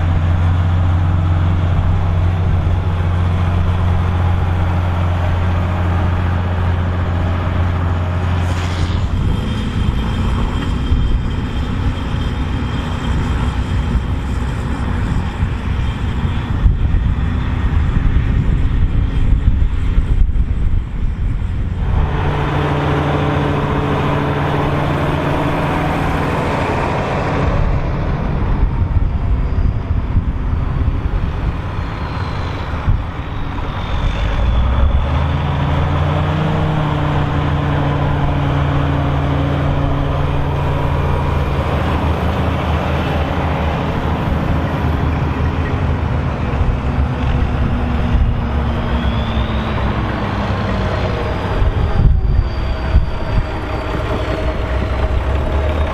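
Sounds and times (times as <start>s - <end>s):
tractor diesel engine under load: 0.0s - 55.9s.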